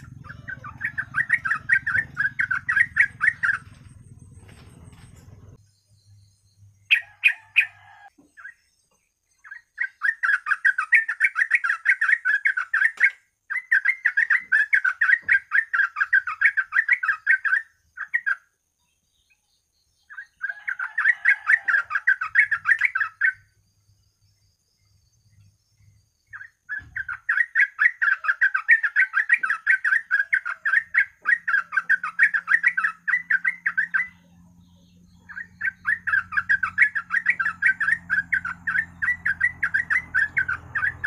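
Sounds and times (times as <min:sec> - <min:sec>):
bird chattering song: 0:00.0 - 0:41.0
sharp bird calls: 0:00.0 - 0:41.0.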